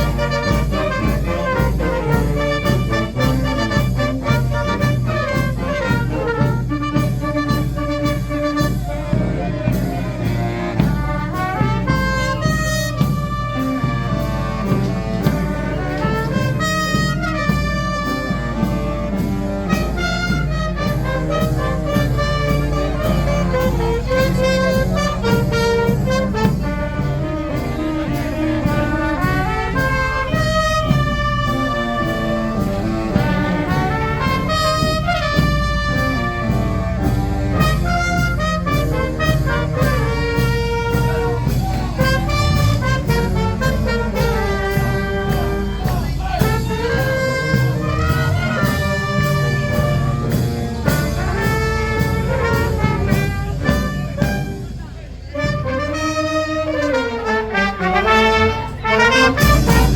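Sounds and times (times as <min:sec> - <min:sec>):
brass band playing: 0:00.0 - 0:59.9
marching drum beat: 0:00.0 - 0:59.9.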